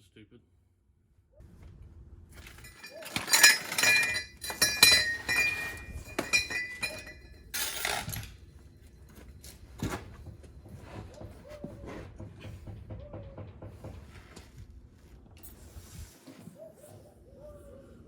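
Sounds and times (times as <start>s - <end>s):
metal exhaust pipes clanking: 2.4s - 8.3s
metallic ringing tone: 2.6s - 7.8s.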